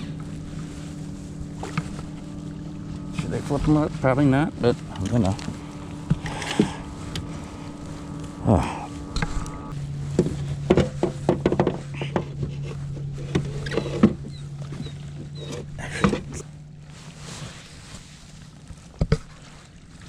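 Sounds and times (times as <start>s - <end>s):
steady low hum: 0.0s - 20.0s
gear knocking on plastic kayak: 10.1s - 14.4s.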